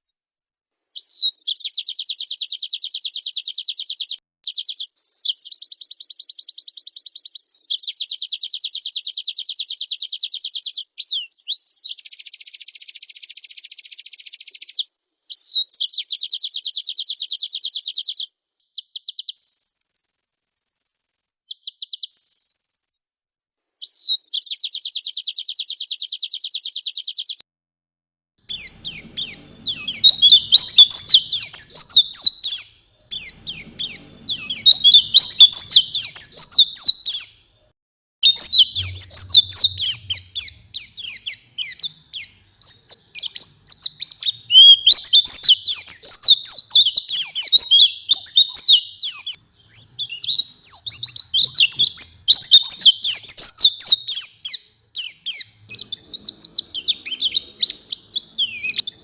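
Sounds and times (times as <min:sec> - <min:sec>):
bird twittering: 0:18.8 - 0:23.0, 0:28.5 - 0:37.5, 0:38.2 - 0:59.0.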